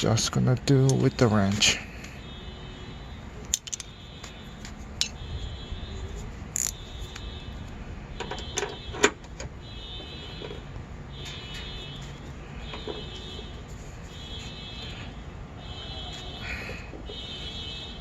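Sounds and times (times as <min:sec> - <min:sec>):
wrenches clicking on metal: 0:03.4 - 0:03.9, 0:06.5 - 0:06.8.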